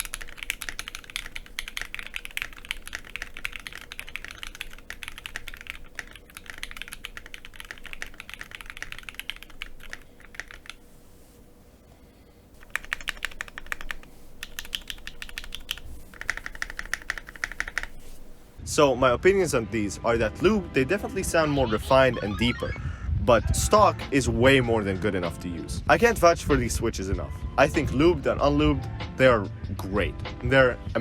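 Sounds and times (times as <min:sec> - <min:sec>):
fast typing on mechanical keyboard: 0:00.0 - 0:11.3, 0:12.6 - 0:18.6.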